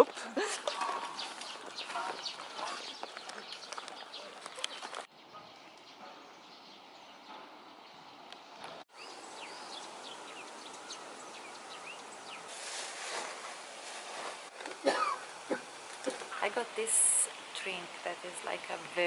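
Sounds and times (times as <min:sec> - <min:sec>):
birds chirping: 0:00.0 - 0:14.2
light rain hiss: 0:09.0 - 0:19.0
rain drips: 0:13.9 - 0:19.0.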